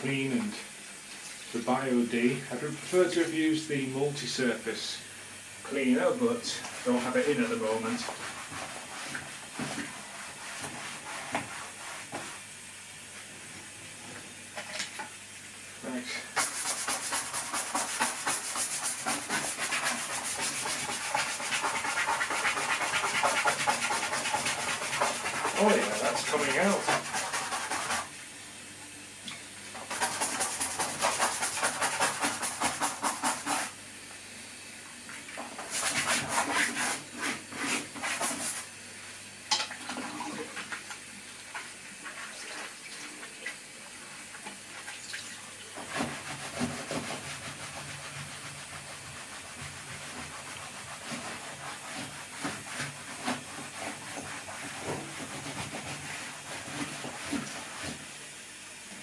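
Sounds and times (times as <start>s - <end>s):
steady hiss: 0.0s - 13.3s, 15.0s - 39.6s
cloth scrubbing plastic trim: 16.4s - 28.0s.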